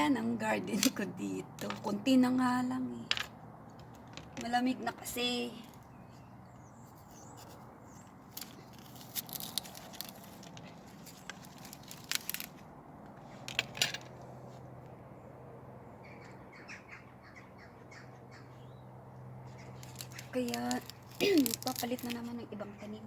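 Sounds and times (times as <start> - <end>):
sharp clicks and crackles: 8.3 - 14.1, 19.8 - 22.4.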